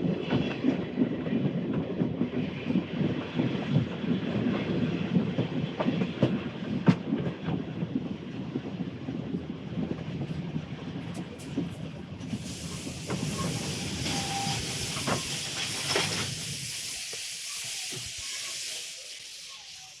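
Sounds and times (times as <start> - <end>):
train wheels clattering on rails: 0.0 - 20.0
steam hissing: 12.2 - 20.0.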